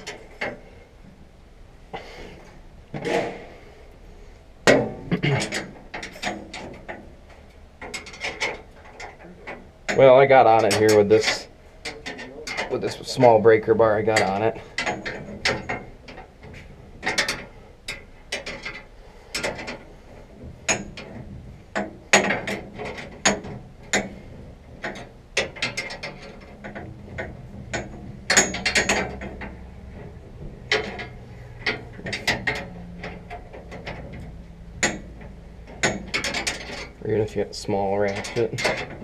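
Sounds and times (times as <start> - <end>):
wrench metallic clicks and clanks: 4.6 - 39.0.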